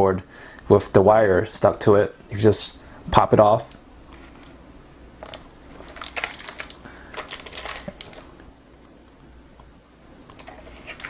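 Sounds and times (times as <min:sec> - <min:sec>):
keyboard plastic clicks and clatter: 0:05.2 - 0:09.2, 0:10.3 - 0:11.0.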